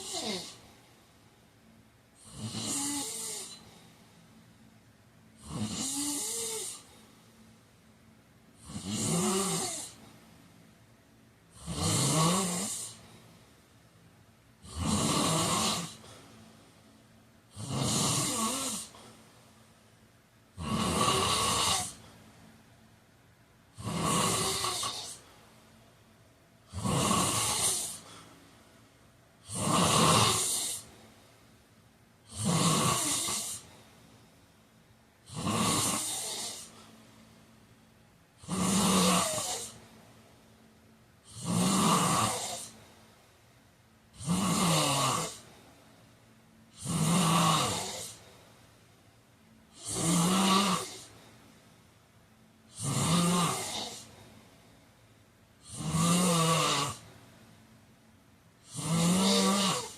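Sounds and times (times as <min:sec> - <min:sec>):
man snoring: 0:00.0 - 0:00.7, 0:02.2 - 0:03.7, 0:05.4 - 0:06.9, 0:08.6 - 0:10.0, 0:11.5 - 0:13.0, 0:14.6 - 0:16.1, 0:17.5 - 0:19.0, 0:20.6 - 0:22.0, 0:23.7 - 0:25.2, 0:26.7 - 0:28.2, 0:29.4 - 0:30.9, 0:32.3 - 0:33.7, 0:35.2 - 0:36.8, 0:38.4 - 0:39.8, 0:41.3 - 0:42.8, 0:44.2 - 0:45.5, 0:46.7 - 0:48.2, 0:49.7 - 0:51.2, 0:52.7 - 0:54.1, 0:55.6 - 0:57.1, 0:58.6 - 0:59.9
quiet breathing: 0:00.0 - 0:44.2, 0:45.2 - 0:55.9.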